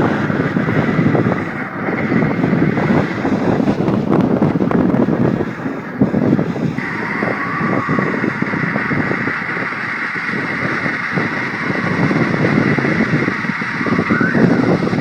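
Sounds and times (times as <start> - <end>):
strong wind blowing: 0.0 - 15.0.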